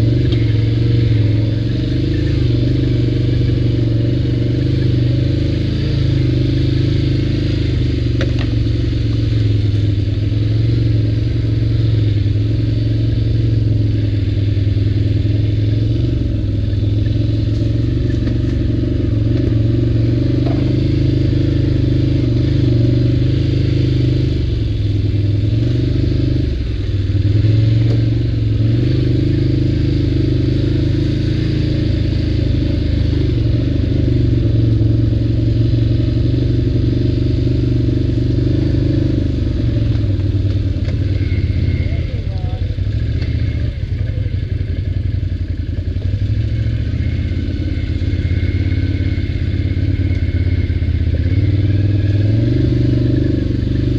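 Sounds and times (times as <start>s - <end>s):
atv engine running: 0.0s - 53.9s.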